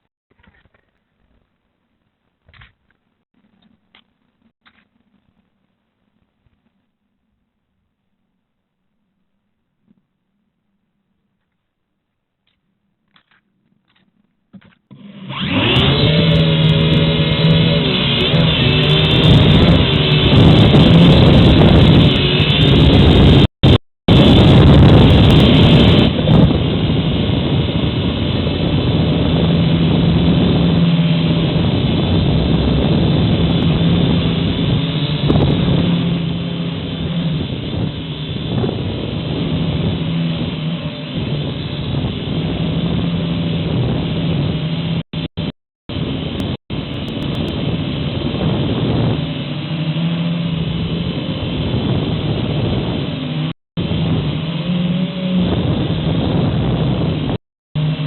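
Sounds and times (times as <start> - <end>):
quadcopter motors buzzing: 14.9 - 23.5, 24.9 - 45.0, 46.9 - 57.1
wind noise on microphone: 15.3 - 58.0.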